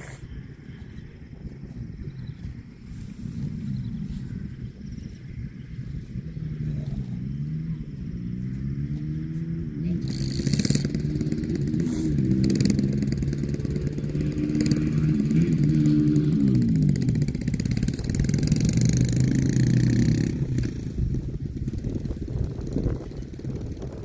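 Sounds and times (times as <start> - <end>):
engine revving: 6.0 - 24.0.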